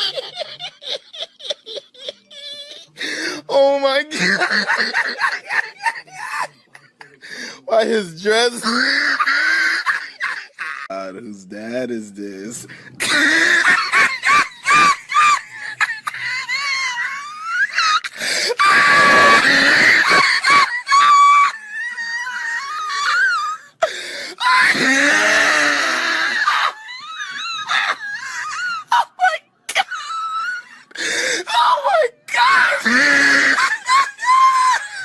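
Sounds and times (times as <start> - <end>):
man laughing uncontrollably: 0.0 - 7.2, 8.7 - 10.9, 13.0 - 23.4, 32.4 - 35.0.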